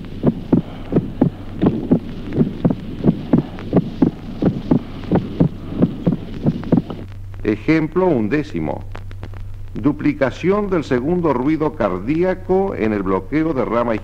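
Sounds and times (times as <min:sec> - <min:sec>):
heartbeat through stethoscope: 0:00.0 - 0:07.4
low hum: 0:00.0 - 0:14.0.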